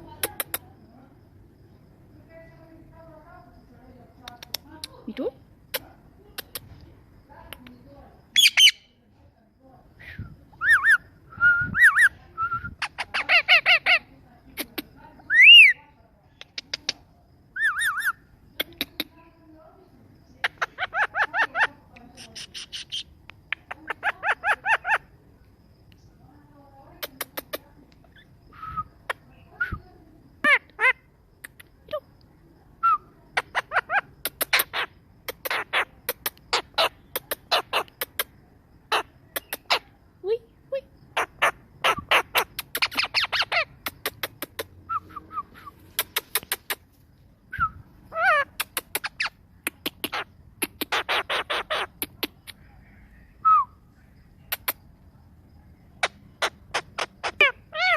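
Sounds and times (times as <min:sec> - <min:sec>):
parrot harsh chattering calls: 0:08.4 - 0:08.9, 0:12.8 - 0:14.0, 0:17.6 - 0:19.0, 0:20.4 - 0:25.1, 0:33.4 - 0:38.3, 0:38.9 - 0:39.9, 0:41.1 - 0:46.9, 0:48.1 - 0:52.6, 0:56.0 - 0:57.9
parrot sharp clicks: 0:46.0 - 0:46.8, 0:48.6 - 0:52.6.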